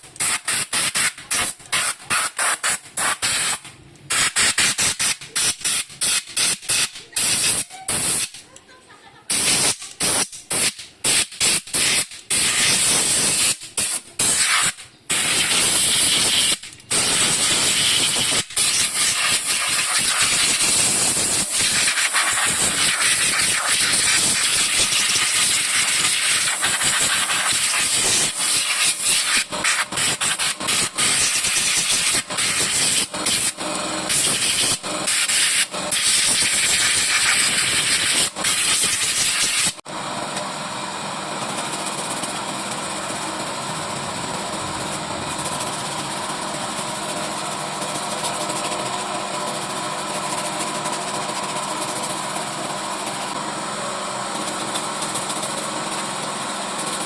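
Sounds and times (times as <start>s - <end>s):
aerosol spray hissing: 9.3s - 33.5s.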